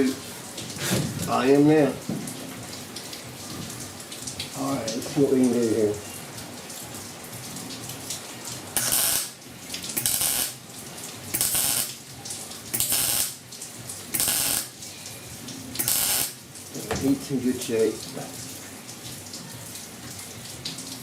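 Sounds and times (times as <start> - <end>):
welder arc crackle: 8.8 - 9.4, 10.0 - 10.6, 11.3 - 12.0, 12.7 - 13.4, 14.1 - 14.8, 15.8 - 16.4.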